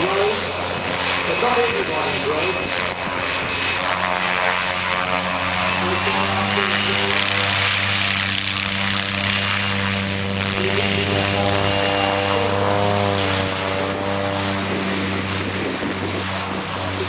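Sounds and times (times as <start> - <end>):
propeller aircraft engine drone: 0.0 - 17.0.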